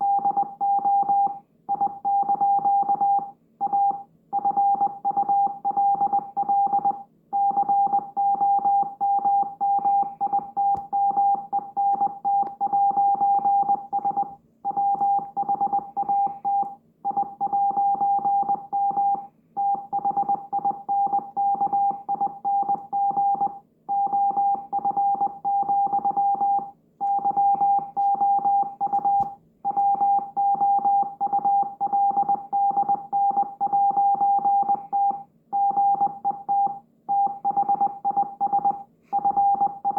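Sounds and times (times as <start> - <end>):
morse code beeps: 0.0 - 39.9.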